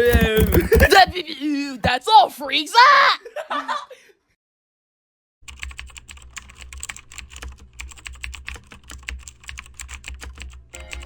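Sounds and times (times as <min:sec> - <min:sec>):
typing on computer keyboard: 0:00.0 - 0:01.1, 0:05.5 - 0:11.0.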